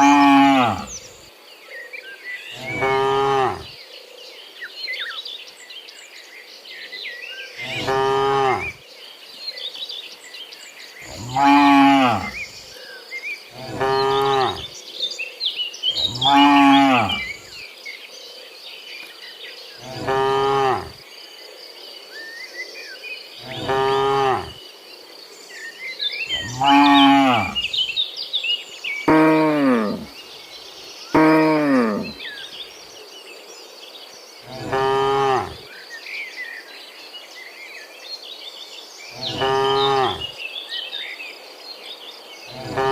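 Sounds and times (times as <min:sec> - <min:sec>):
cows mooing: 0:00.0 - 0:01.1, 0:02.6 - 0:03.7, 0:07.6 - 0:08.8, 0:11.1 - 0:12.5, 0:13.6 - 0:14.7, 0:16.0 - 0:17.4, 0:19.8 - 0:21.0, 0:23.4 - 0:24.6, 0:26.3 - 0:27.8, 0:29.1 - 0:30.1, 0:31.2 - 0:32.2, 0:34.5 - 0:35.6, 0:39.2 - 0:40.3.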